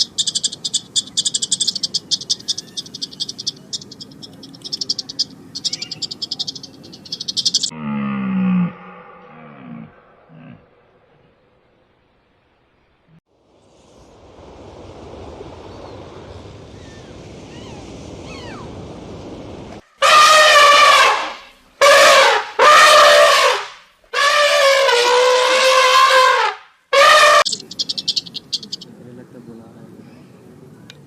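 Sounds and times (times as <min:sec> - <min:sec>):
faint background noise: 0:26.7 - 0:31.0.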